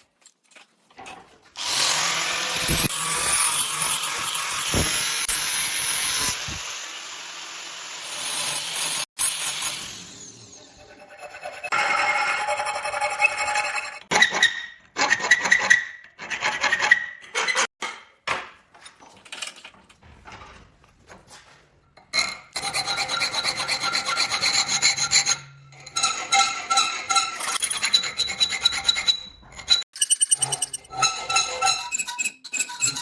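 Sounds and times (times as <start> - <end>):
file rasping on steel: 10.7 - 17.7, 22.6 - 29.8, 30.5 - 33.0.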